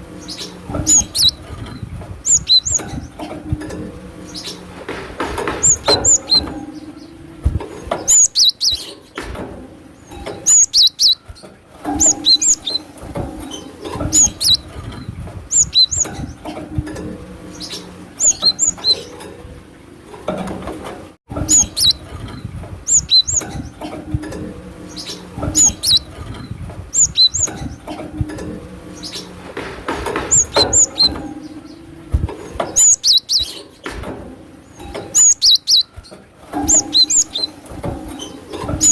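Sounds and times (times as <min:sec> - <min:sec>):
bird chirping: 0:00.2 - 0:03.2, 0:05.5 - 0:07.2, 0:07.9 - 0:09.2, 0:10.0 - 0:16.5, 0:17.4 - 0:19.2, 0:21.5 - 0:22.1, 0:22.8 - 0:23.9, 0:24.8 - 0:27.9, 0:30.2 - 0:31.9, 0:32.5 - 0:33.9, 0:34.7 - 0:38.9.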